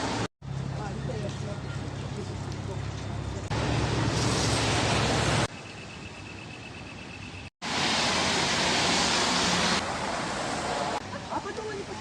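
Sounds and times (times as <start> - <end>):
rain hissing: 7.6 - 12.0.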